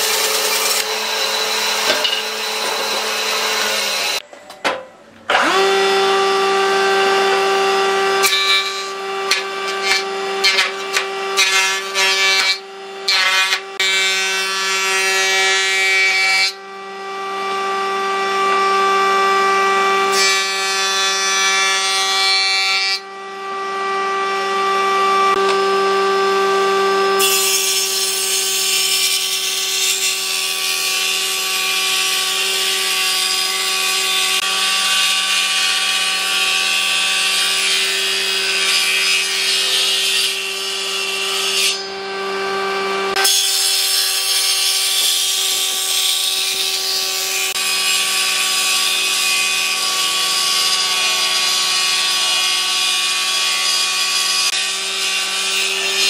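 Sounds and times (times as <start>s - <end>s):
power tool whining through wood: 0.0s - 4.3s, 5.2s - 56.0s.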